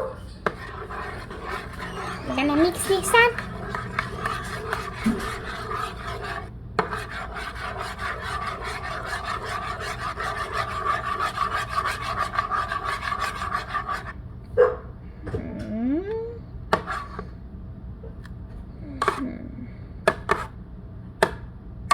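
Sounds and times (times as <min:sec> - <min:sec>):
utensil stirring slime: 0:00.0 - 0:14.2, 0:16.8 - 0:17.3, 0:19.0 - 0:19.2.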